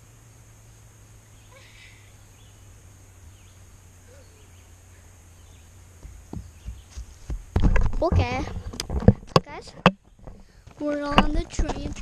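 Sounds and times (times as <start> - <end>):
faint bird chirps: 0.0 - 7.1
steady low hum: 0.0 - 12.0.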